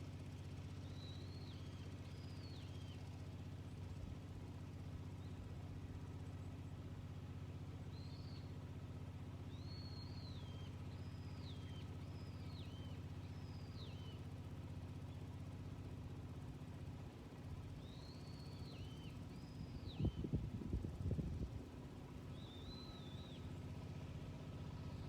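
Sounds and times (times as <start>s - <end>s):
bird whistling calls: 9.5s - 14.1s, 17.8s - 20.3s, 22.3s - 23.5s.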